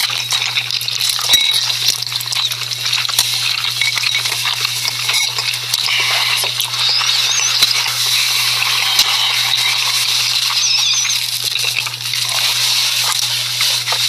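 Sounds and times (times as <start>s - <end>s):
close crackling and hissing: 0.0s - 14.0s
brief squeaks: 10.5s - 11.2s.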